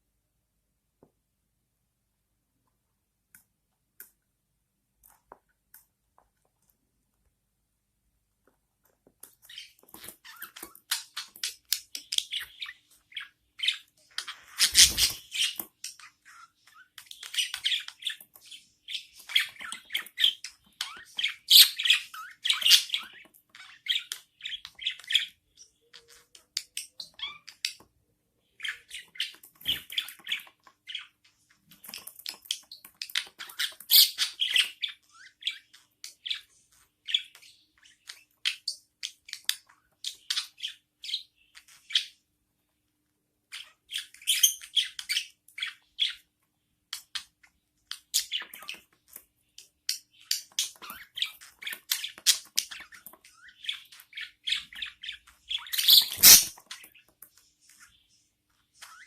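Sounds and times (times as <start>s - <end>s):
budgerigar chicks cheeping: 53.6s - 56.6s.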